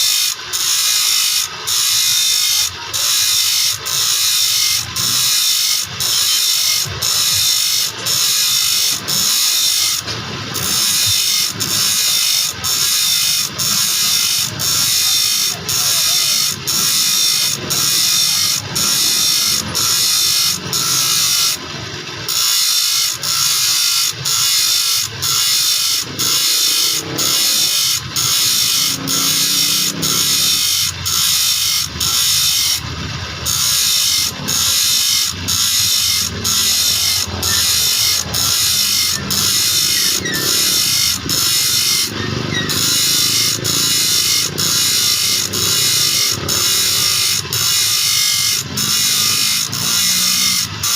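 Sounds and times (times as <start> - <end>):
file rasping on saw teeth: 0.0 - 21.6, 22.3 - 32.9, 33.5 - 50.9.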